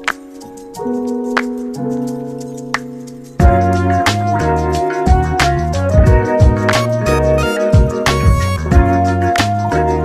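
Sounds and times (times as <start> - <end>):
keyboard chords with light ticks: 0.0 - 10.0
beat with bass and drums: 2.8 - 10.0.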